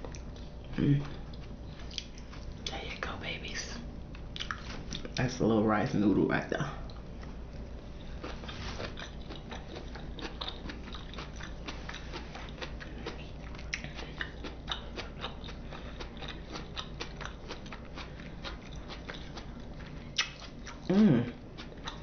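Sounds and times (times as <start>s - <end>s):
wet chewing mouth clicks: 1.0s - 2.8s, 4.2s - 5.2s, 8.2s - 22.0s.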